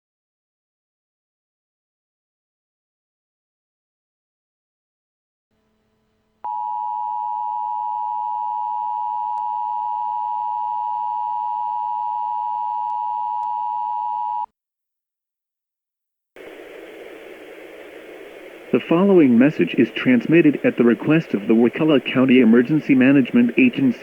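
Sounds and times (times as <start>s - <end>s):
broadcast static hiss: 16.4s - 24.0s.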